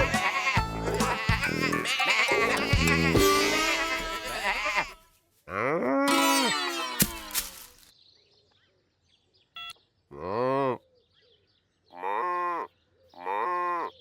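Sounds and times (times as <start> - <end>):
cartoon cow mooing: 0.0 - 7.3.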